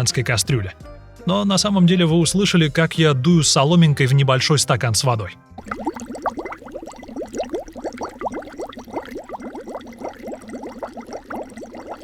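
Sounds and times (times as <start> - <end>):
water bubbling through straw: 5.6 - 12.0.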